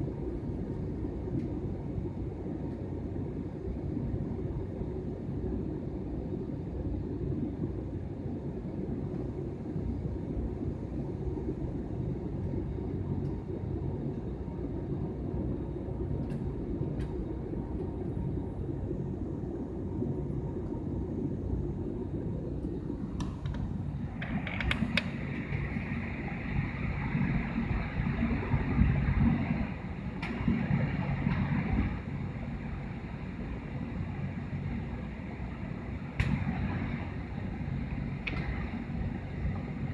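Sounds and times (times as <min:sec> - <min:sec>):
airliner cabin rumble: 0:00.0 - 0:39.9
scattered clicks: 0:23.2 - 0:25.6.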